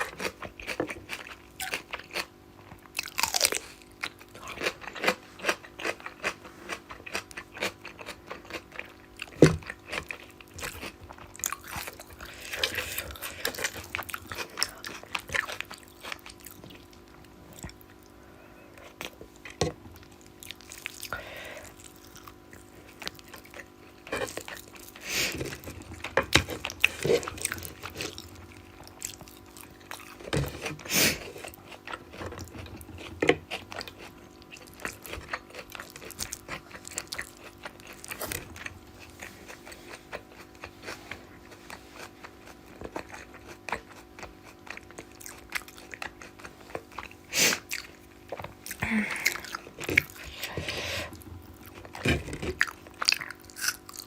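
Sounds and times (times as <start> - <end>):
faint steady hum: 0.0 - 54.0
person chewing food: 0.0 - 54.0.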